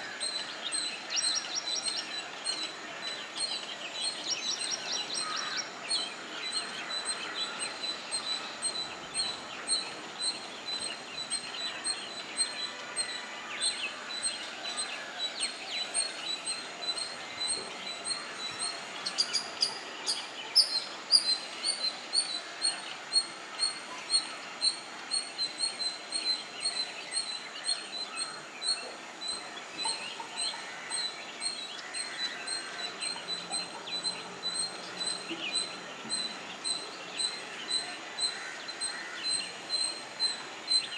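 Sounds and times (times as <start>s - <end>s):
birds chirping and calling: 0.0s - 40.9s.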